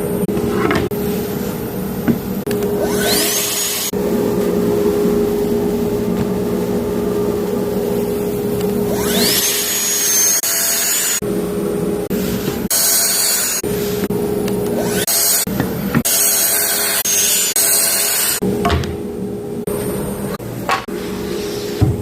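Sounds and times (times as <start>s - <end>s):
shop vacuum drone: 0.0s - 22.0s
saw whine spinning up: 2.4s - 6.1s, 6.8s - 15.5s.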